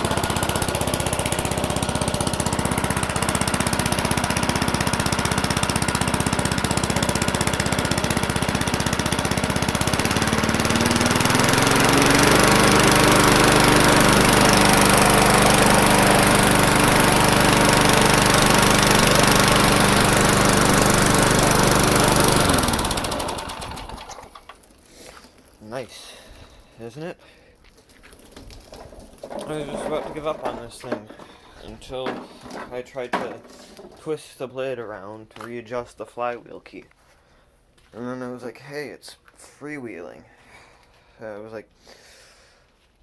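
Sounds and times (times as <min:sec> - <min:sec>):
lawn mower engine running: 0:00.0 - 0:24.6, 0:28.6 - 0:34.1.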